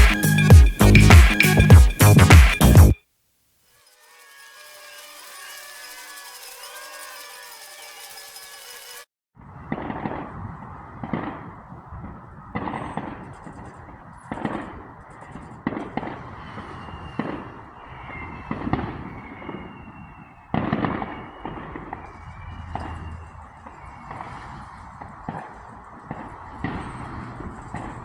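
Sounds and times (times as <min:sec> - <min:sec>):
thin whistling tones: 0:00.0 - 0:03.0, 0:16.4 - 0:24.6
fireworks bangs: 0:09.5 - 0:28.0.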